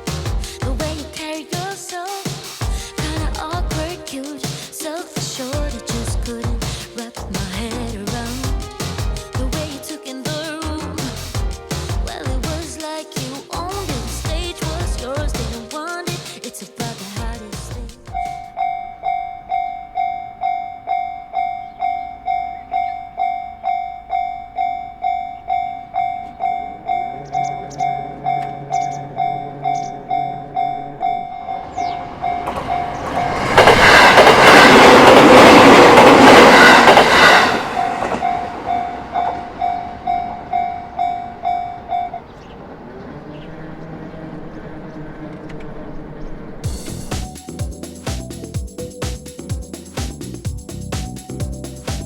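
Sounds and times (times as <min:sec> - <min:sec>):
train passing: 0:18.1 - 0:48.8.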